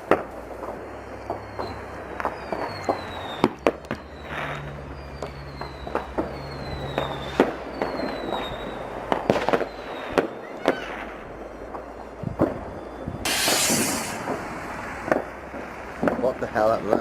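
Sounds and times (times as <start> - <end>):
distant fireworks bangs: 0.0 - 17.0
falling high whistle: 1.3 - 11.2, 12.6 - 14.8.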